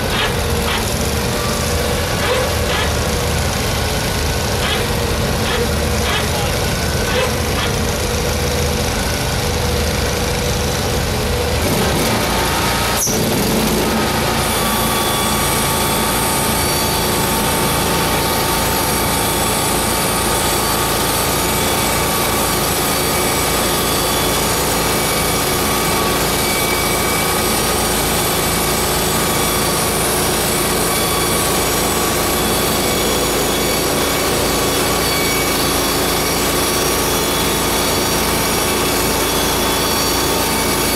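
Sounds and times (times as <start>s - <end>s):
band blade cutting log: 0.0s - 3.1s, 4.6s - 6.5s, 7.1s - 7.8s
sawmill engine running: 0.0s - 40.9s.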